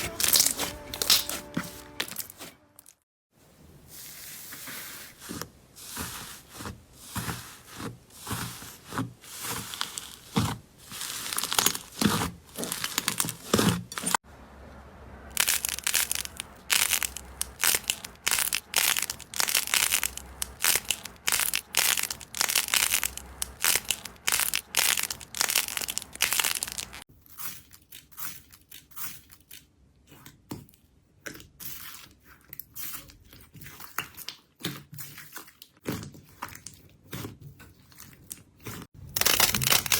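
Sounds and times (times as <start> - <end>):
slime squeezed and crackling: 0.0 - 1.4, 7.1 - 14.2, 15.3 - 29.6, 31.6 - 39.9.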